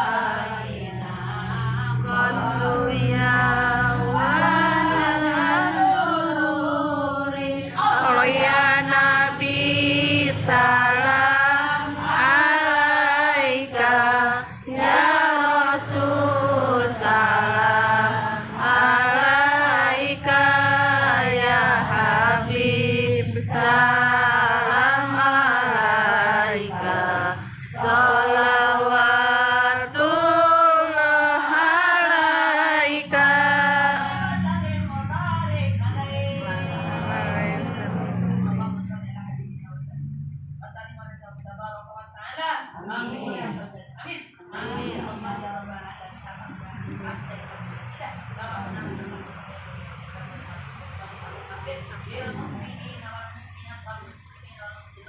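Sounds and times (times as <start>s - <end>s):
voices chanting together: 0.0s - 39.5s, 42.7s - 43.9s, 44.5s - 45.8s
steady low hum: 0.0s - 42.2s, 42.8s - 55.0s.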